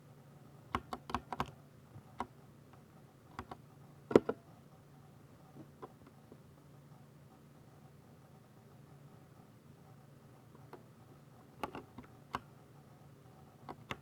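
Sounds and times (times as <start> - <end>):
mechanical keyboard keystrokes: 0.7 - 1.6, 11.6 - 12.5.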